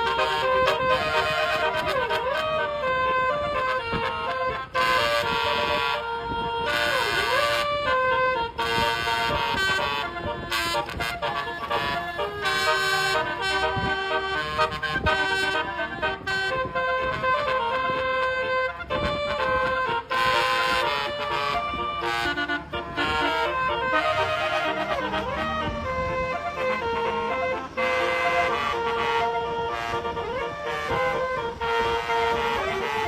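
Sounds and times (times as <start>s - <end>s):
musical air horn melody: 0.0s - 33.0s.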